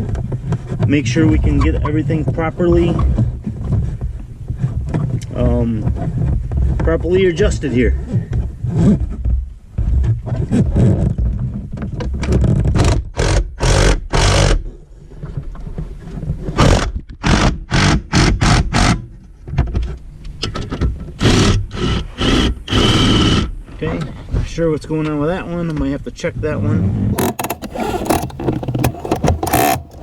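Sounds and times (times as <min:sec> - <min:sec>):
hand tool sharp strokes: 0:12.8 - 0:14.6, 0:21.2 - 0:23.5, 0:27.2 - 0:30.0.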